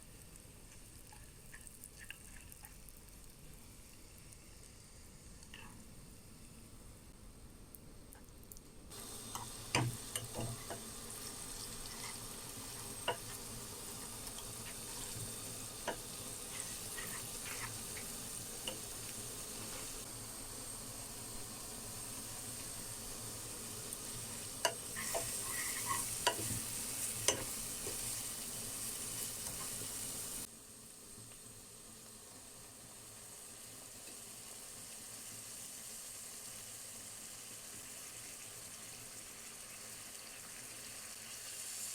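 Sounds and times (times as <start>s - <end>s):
food sizzling in a pan: 0.0s - 7.1s, 8.9s - 41.9s
steady hiss: 0.0s - 41.9s
utensil scraping a pan: 11.7s - 13.4s, 14.0s - 18.1s, 24.7s - 28.1s.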